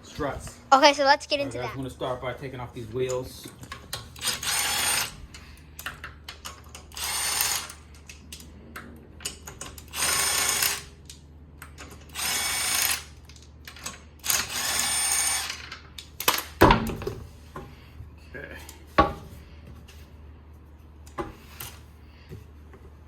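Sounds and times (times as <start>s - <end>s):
power tool spinning lug bolts: 3.7s - 5.4s, 6.2s - 8.2s, 9.3s - 16.6s.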